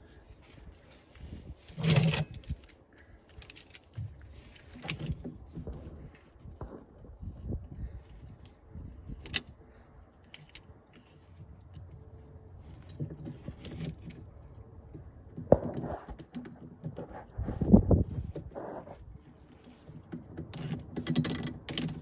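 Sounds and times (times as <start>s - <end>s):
metal parts and tools clinking: 1.6s - 2.7s, 3.3s - 5.8s, 8.8s - 9.6s, 10.2s - 11.9s, 12.6s - 14.7s, 19.7s - 22.0s.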